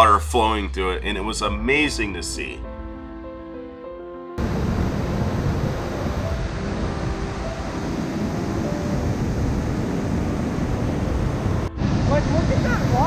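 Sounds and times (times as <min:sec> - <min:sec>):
waterfall rushing: 0:04.4 - 0:13.0.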